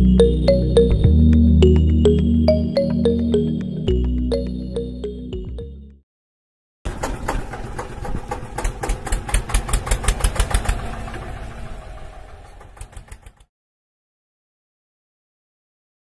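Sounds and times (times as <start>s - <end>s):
diesel engine putter: 6.9s - 13.5s.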